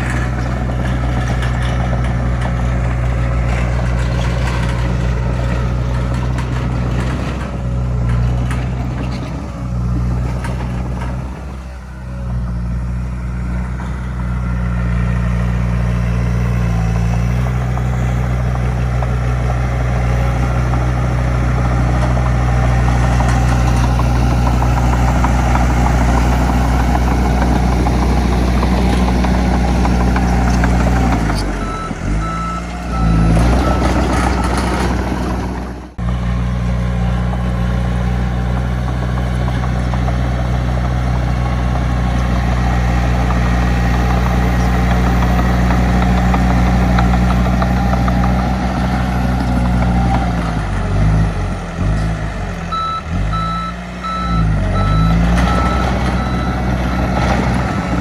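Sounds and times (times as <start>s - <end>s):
heavy diesel machinery running: 0.0s - 58.0s
reversing alarm beeping: 30.9s - 35.3s, 52.7s - 58.0s.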